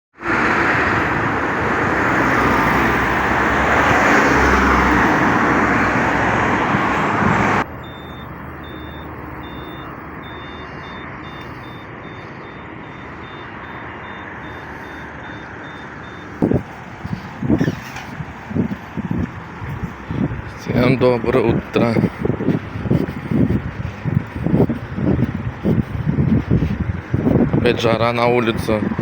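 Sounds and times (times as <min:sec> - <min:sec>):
loud street traffic: 0:00.2 - 0:29.0
quiet street ambience: 0:00.2 - 0:29.0
high electronic beep: 0:07.7 - 0:16.6.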